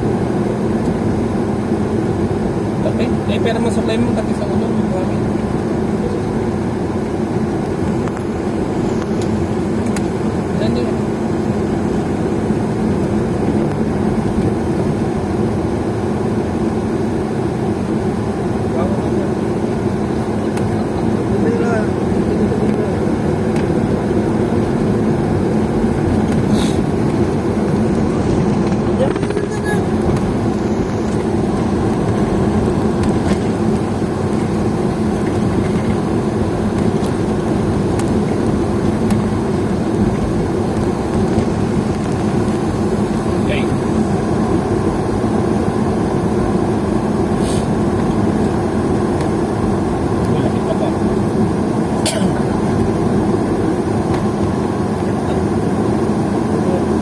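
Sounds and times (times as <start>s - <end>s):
road noise: 0.0s - 57.0s
vehicle engine running: 0.0s - 57.0s.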